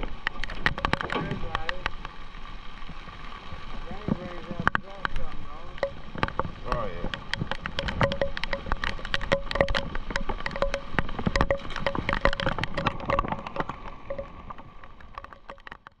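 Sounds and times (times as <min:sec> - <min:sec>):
big raindrops on hard surface: 0:00.0 - 0:16.0.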